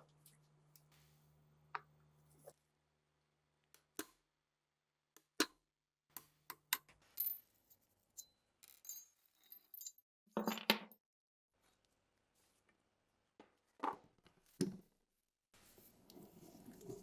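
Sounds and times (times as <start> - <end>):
metal parts clicking and clinking: 7.2 - 10.0.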